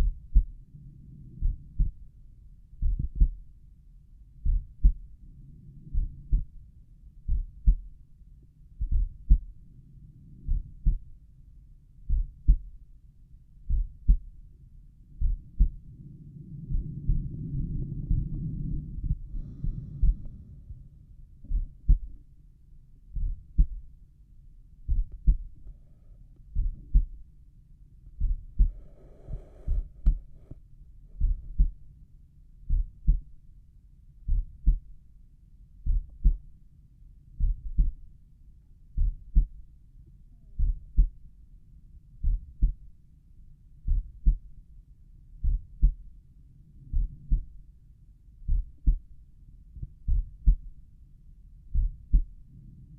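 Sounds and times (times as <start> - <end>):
heartbeat lub-dub thumps: 0.0 - 0.7, 1.3 - 3.6, 4.4 - 5.2, 5.8 - 6.6, 7.2 - 8.0, 8.8 - 9.6, 10.4 - 11.3, 12.0 - 12.8, 13.6 - 14.4, 15.1 - 16.0, 16.6 - 22.3, 23.1 - 23.9, 24.8 - 25.7, 26.4 - 27.2, 28.1 - 30.5, 31.2 - 31.8, 32.7 - 33.4, 34.2 - 34.9, 35.8 - 36.5, 37.4 - 38.0, 39.0 - 39.6, 40.6 - 41.2, 42.2 - 42.9, 43.8 - 44.5, 45.4 - 46.1, 46.8 - 47.6, 48.4 - 49.1, 49.7 - 50.8, 51.7 - 52.5.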